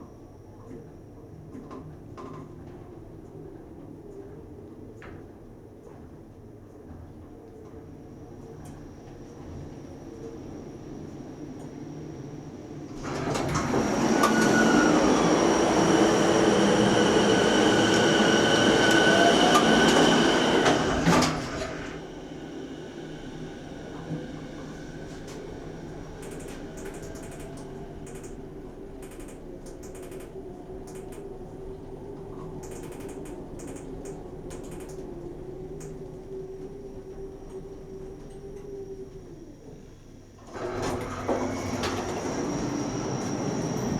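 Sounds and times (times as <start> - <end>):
elevator humming: 10.0 - 43.9
train passing with high whine: 10.6 - 43.9
elevator noise bursts: 13.0 - 23.9.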